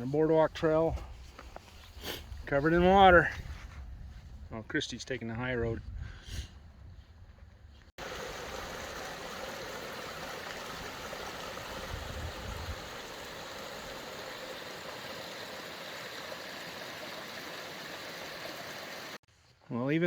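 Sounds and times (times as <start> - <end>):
mountain stream rushing: 8.0 - 19.2.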